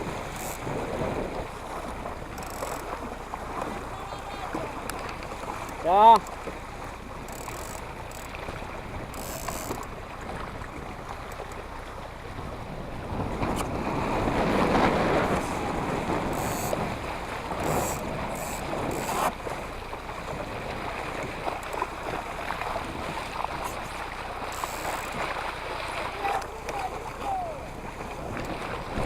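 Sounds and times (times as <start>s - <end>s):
wind on microphone: 0.0s - 2.4s, 12.2s - 19.5s, 27.1s - 29.0s
water splashing along a hull: 0.0s - 29.0s.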